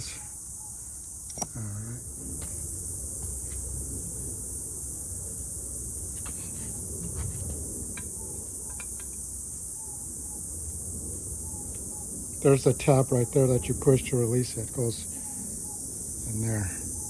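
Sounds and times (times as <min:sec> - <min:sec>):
high-pitched hiss: 0:00.0 - 0:17.0.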